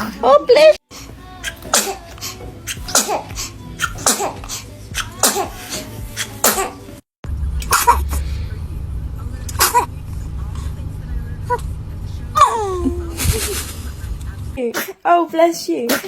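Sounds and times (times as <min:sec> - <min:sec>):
baby sneezing: 0:01.4 - 0:06.8, 0:14.6 - 0:15.1, 0:15.8 - 0:16.0.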